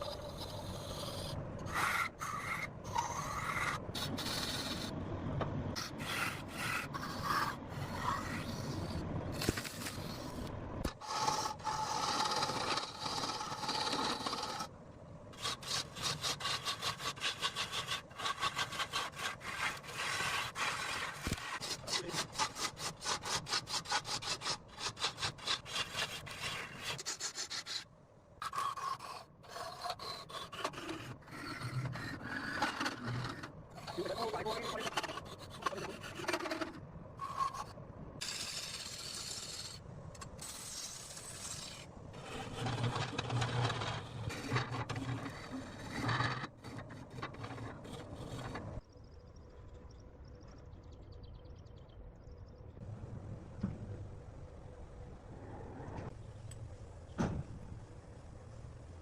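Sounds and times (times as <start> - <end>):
hand tool rasping on wood: 15.4 - 27.8, 28.4 - 36.8, 40.4 - 48.7.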